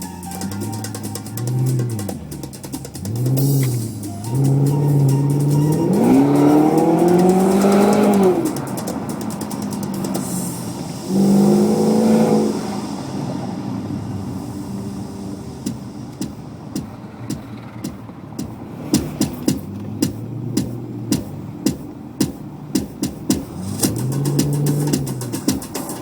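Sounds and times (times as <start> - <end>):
car engine idling and revving: 0.0 - 26.0.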